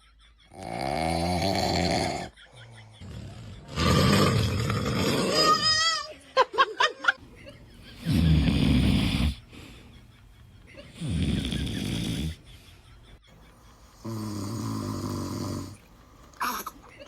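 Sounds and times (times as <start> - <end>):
person snoring loudly: 0.5 - 2.4, 3.0 - 5.7, 8.1 - 9.4, 11.0 - 12.4, 14.0 - 15.8.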